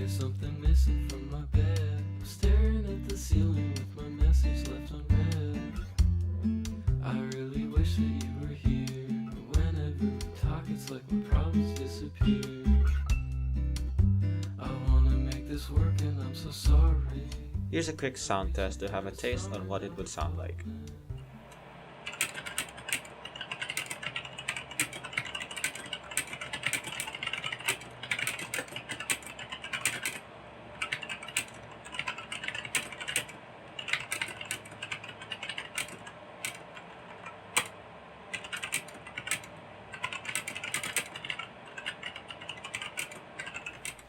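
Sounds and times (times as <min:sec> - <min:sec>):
mechanical keyboard typing: 0:22.1 - 0:44.0.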